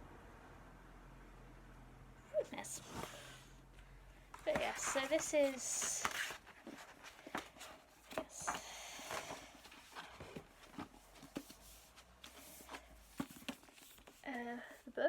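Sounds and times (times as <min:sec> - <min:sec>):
hardback book being handled: 0:02.6 - 0:03.4, 0:04.2 - 0:14.8.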